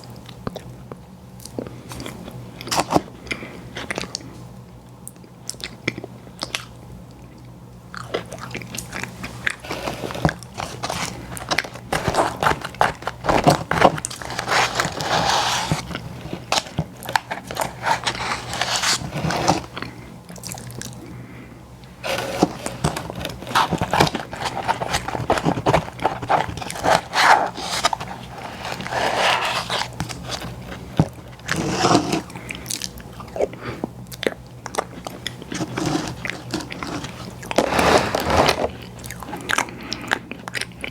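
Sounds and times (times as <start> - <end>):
person chewing: 7.9 - 21.0, 21.8 - 40.9.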